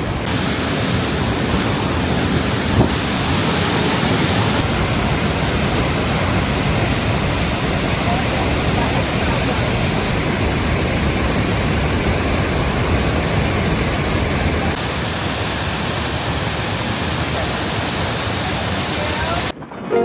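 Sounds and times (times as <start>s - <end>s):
waterfall rushing: 0.0s - 10.1s, 14.7s - 20.0s.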